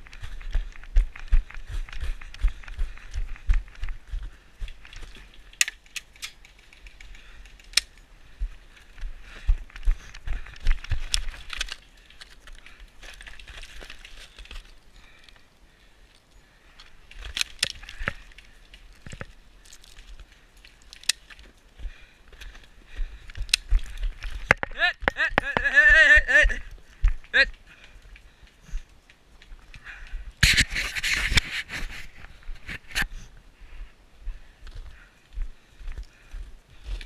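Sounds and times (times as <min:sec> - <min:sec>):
sharp clicks: 0:04.7 - 0:08.0
rustling through dry leaves: 0:08.2 - 0:24.5
person shouting: 0:24.7 - 0:26.6.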